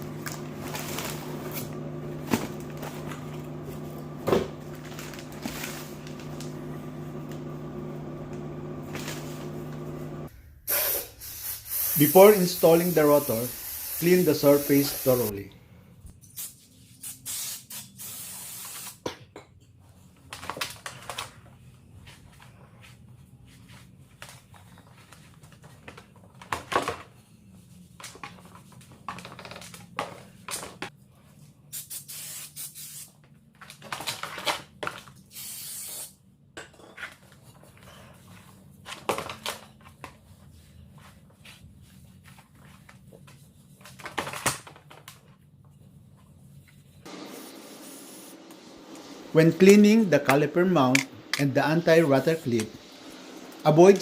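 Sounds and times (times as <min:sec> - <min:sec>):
aerosol spray bursts: 0:10.7 - 0:15.4, 0:16.4 - 0:19.0, 0:31.7 - 0:33.1, 0:35.3 - 0:36.1, 0:47.1 - 0:49.7.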